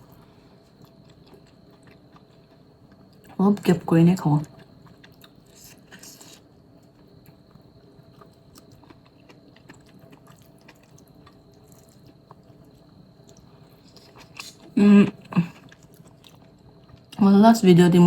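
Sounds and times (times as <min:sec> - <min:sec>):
faint steady hum: 0:00.0 - 0:18.0
chewing and mouth clicks: 0:00.1 - 0:03.4, 0:04.4 - 0:17.2.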